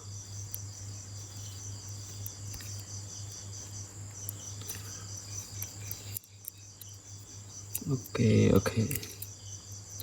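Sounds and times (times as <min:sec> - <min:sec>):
faint wire clicks: 0:04.1 - 0:07.0, 0:07.6 - 0:10.0.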